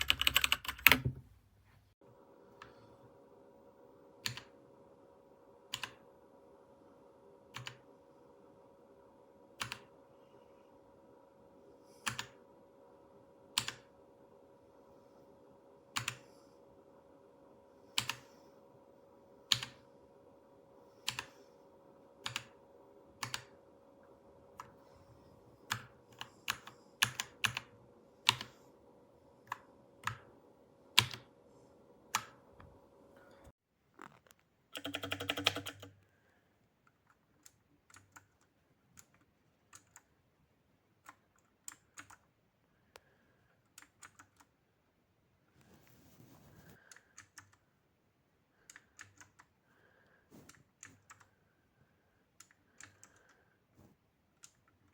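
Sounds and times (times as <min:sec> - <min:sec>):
mechanical keyboard keystrokes: 0:00.0 - 0:01.2, 0:34.7 - 0:36.0
faint steady hum: 0:00.0 - 0:54.9.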